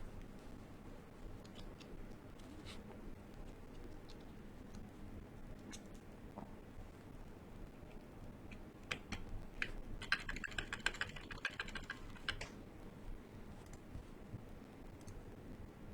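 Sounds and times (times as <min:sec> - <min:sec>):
mechanical keyboard typing: 0:08.9 - 0:12.6.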